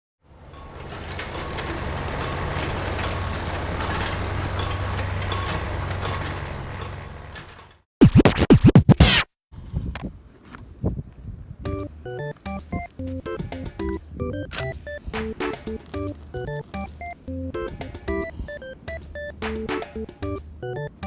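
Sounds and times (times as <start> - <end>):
record-scratch sweeps: 8.0 - 9.3.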